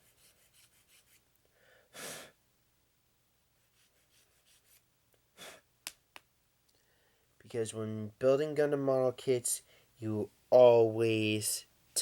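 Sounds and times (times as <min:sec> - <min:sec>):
short breath: 0:01.4 - 0:02.4, 0:05.4 - 0:05.7, 0:06.8 - 0:07.4, 0:09.6 - 0:10.0.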